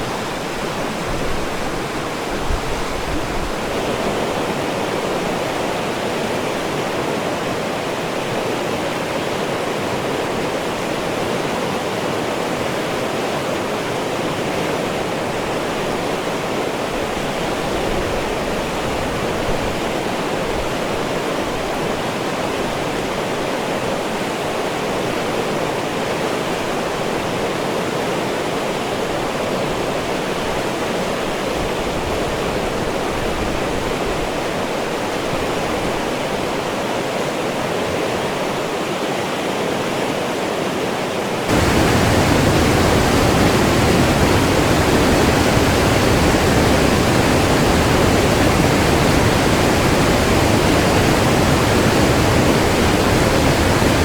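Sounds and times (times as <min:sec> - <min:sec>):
river rapids rushing: 0:41.5 - 0:54.0.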